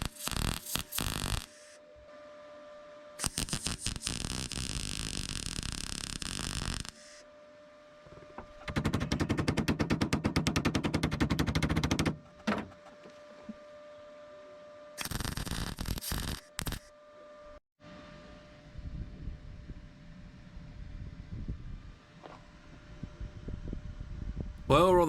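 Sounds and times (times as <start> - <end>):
welder crackling: 0.0 - 1.8, 3.2 - 7.2, 15.0 - 16.9.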